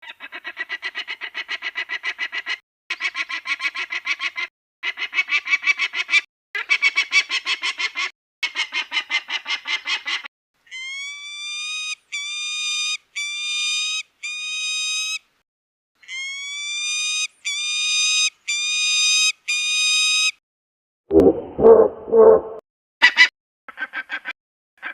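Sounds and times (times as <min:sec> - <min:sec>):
falcon rising calls: 0:21.1 - 0:22.6.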